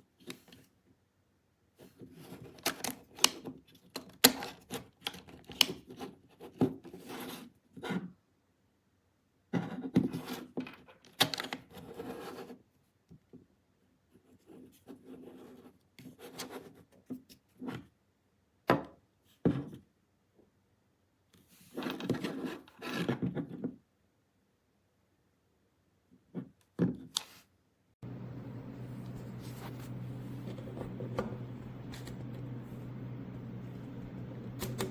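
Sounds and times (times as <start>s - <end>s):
rubbing and scraping: 28.6s - 34.9s.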